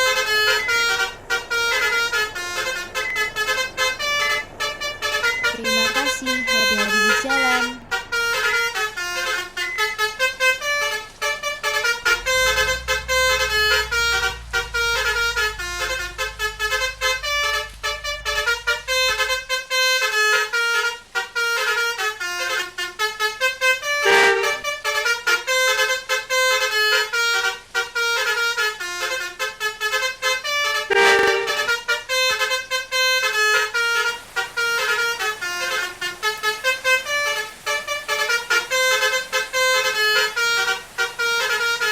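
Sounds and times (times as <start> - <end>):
low rumble: 0.0 - 6.8, 7.7 - 20.8
bus musical horns playing tune: 0.0 - 41.9.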